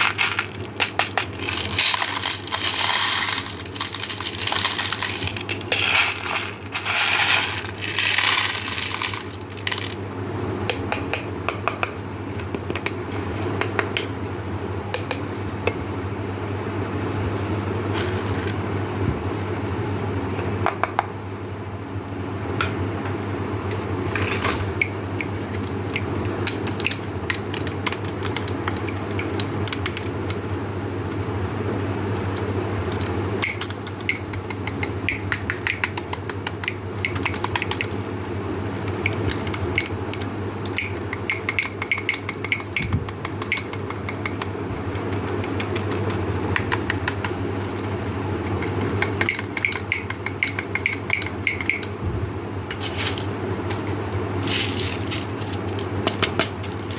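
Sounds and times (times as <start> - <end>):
hard candies clicking and clattering: 0.0 - 10.0, 25.6 - 30.4, 32.9 - 38.1, 38.7 - 51.9, 54.4 - 56.9
steady low hum: 0.0 - 56.9.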